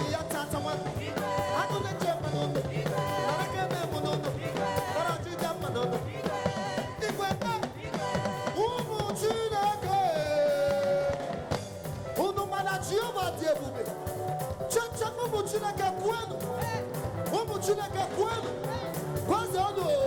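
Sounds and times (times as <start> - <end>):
person singing: 0.0 - 14.0
band with steady drum beat: 0.0 - 20.0.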